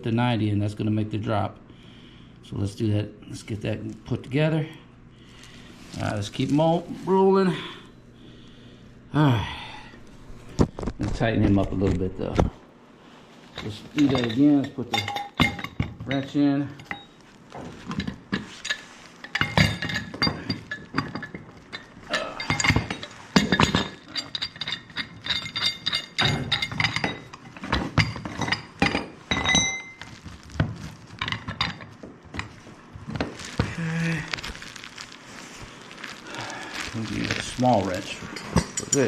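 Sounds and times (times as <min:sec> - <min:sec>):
wrenches clinking on metal pipe: 0:13.6 - 0:30.2, 0:37.3 - 0:39.0.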